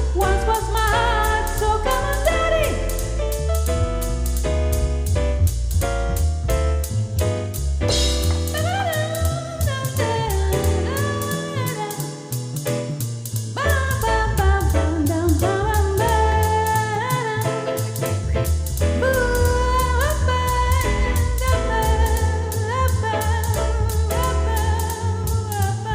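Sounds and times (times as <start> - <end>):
vocal melody: 0.0 - 4.5, 7.9 - 12.8, 13.5 - 25.9
bass: 0.0 - 25.9
drum beat: 2.6 - 14.0.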